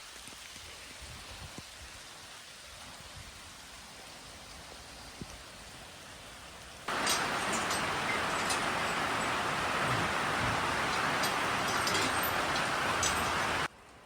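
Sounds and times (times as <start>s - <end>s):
loud rush of rain: 0.0s - 13.7s
steady rain hiss: 0.0s - 14.0s
faint raindrop ticks: 5.2s - 5.4s, 6.9s - 14.0s.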